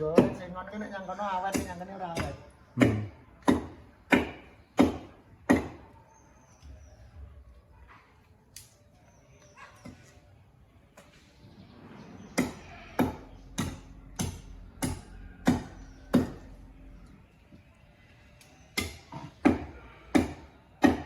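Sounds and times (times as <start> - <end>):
hand tool chopping wood: 12.4 - 16.5, 18.8 - 21.0.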